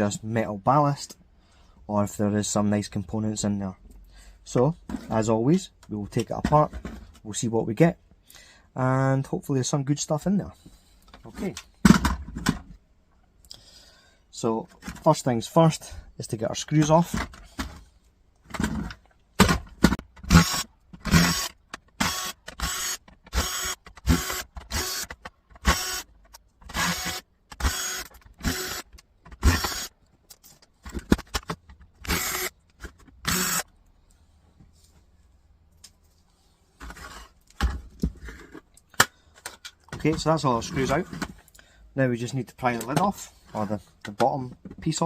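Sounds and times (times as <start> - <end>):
electric screwdriver bursts: 20.2 - 26.1, 26.7 - 29.9, 32.0 - 32.5, 33.2 - 33.7.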